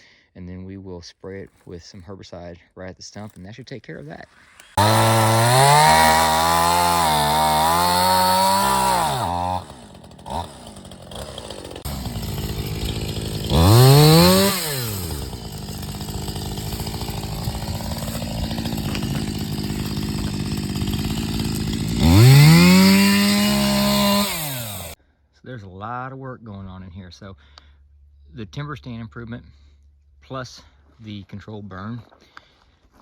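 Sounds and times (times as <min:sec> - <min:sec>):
chainsaw engine revving: 0:04.5 - 0:25.0.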